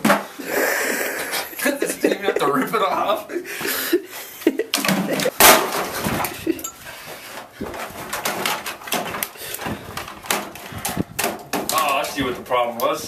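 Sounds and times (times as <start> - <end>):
metal and plastic parts clattering: 4.7 - 12.9.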